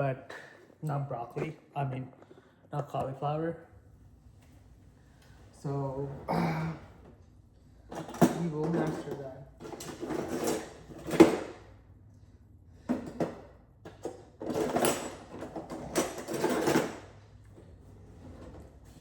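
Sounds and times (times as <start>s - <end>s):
kitchen utensils clattering: 7.9s - 11.6s, 12.9s - 17.2s.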